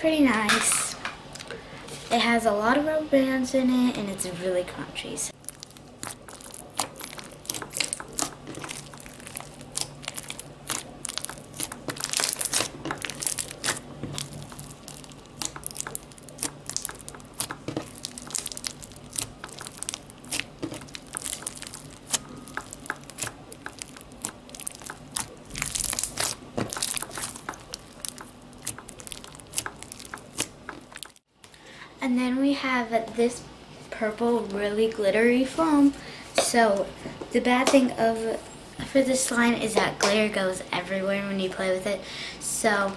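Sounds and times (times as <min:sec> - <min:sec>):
slime crackling and popping: 0:05.4 - 0:31.3.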